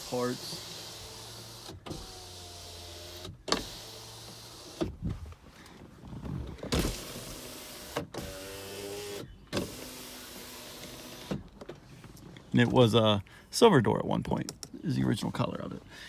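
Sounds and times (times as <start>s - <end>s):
power window motor whirring: 0.0s - 5.1s, 6.1s - 11.7s.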